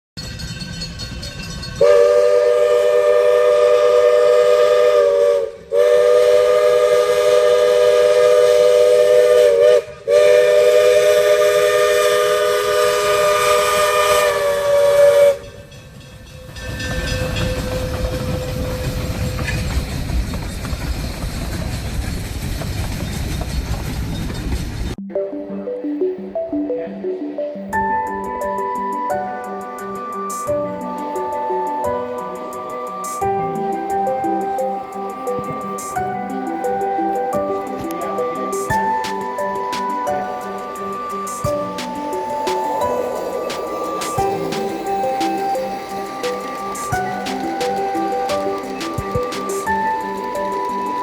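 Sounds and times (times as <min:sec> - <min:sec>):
train rumbling: 0:00.2 - 0:25.0, 0:27.7 - 0:51.0
locomotive air horn blasts: 0:01.8 - 0:15.4.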